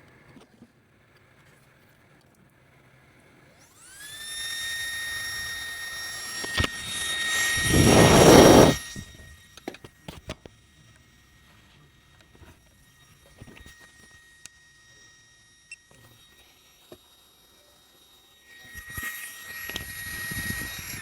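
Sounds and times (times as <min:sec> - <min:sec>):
small electric motor whining: 0:03.6 - 0:21.0
loud rough burst of noise: 0:06.6 - 0:09.0.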